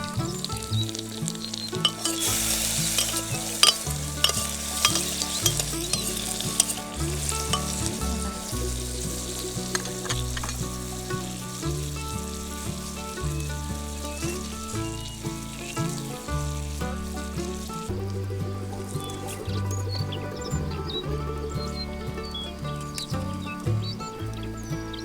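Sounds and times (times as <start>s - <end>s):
food sizzling in oil: 0.3s - 17.7s.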